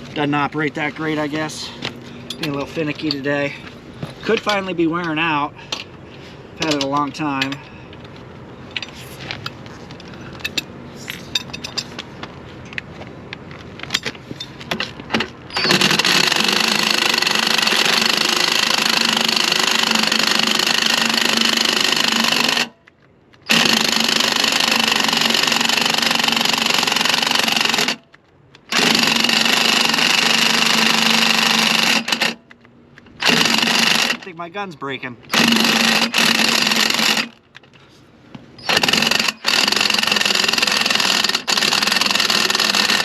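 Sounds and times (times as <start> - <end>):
impact wrench hammering: 33.2 - 34.2, 35.3 - 37.4, 38.6 - 43.0.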